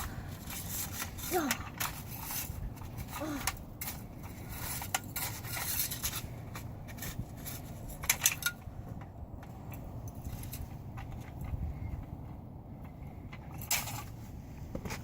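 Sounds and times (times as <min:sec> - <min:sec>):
toy bucket scraping snow: 0:00.0 - 0:08.0.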